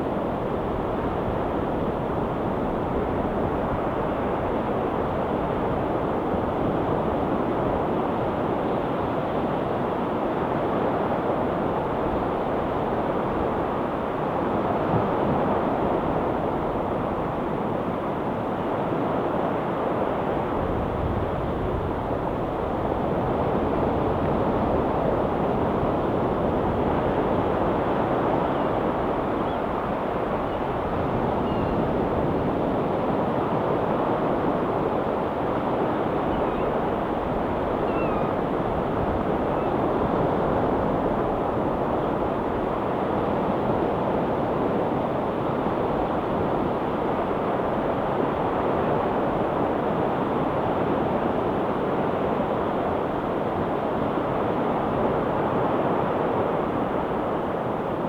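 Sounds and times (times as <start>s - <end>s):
faint short high calls: 30.4s - 31.9s, 36.2s - 36.9s, 37.5s - 38.4s.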